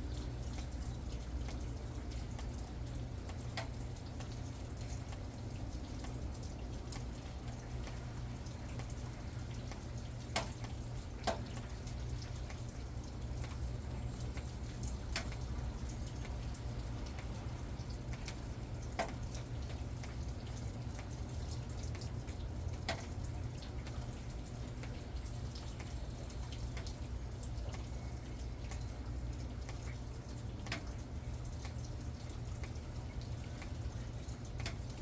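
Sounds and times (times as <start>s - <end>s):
water drops tapping: 9.6s - 21.2s.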